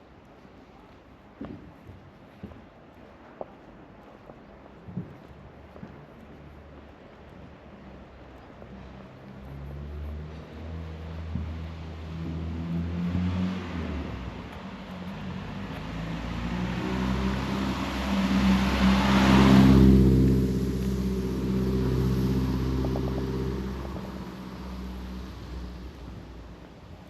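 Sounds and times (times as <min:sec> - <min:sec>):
vehicle driving past: 0:08.7 - 0:26.8.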